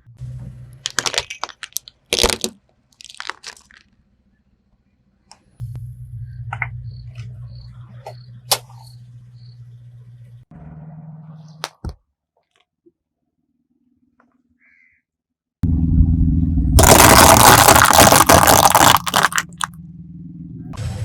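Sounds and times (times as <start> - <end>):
steady low hum: 5.6 - 10.5
tyre crunching over object: 16.8 - 19.7.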